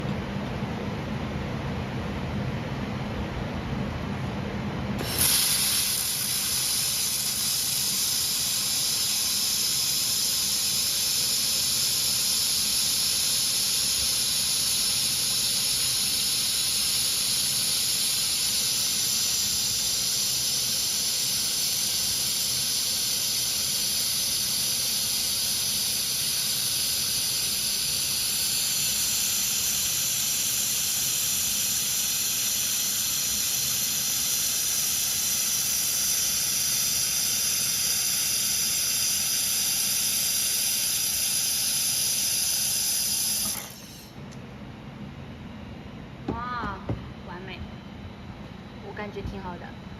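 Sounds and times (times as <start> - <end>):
laser welding high hiss: 5.0 - 44.2.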